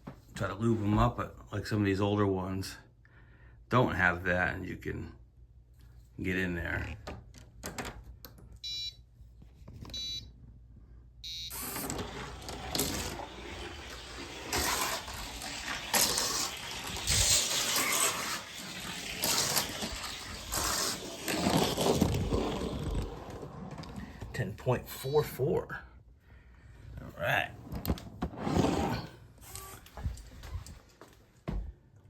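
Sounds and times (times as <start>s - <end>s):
electronic timer beeps: 8.6s - 9.0s, 9.9s - 10.3s, 11.2s - 11.8s
toy car rattling down a track: 11.6s - 23.1s.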